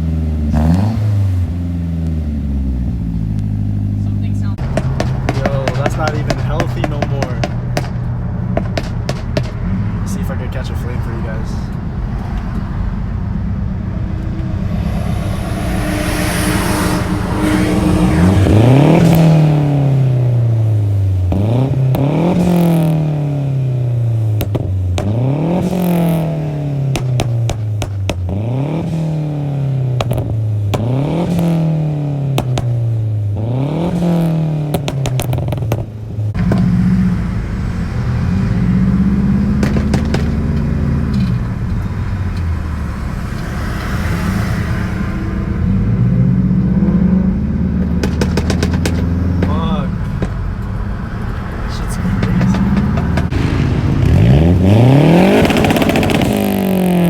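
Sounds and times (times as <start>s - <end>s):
car engine idling: 0.0s - 57.0s
car engine revving: 0.0s - 57.0s
exhaust popping and crackling: 0.0s - 57.0s.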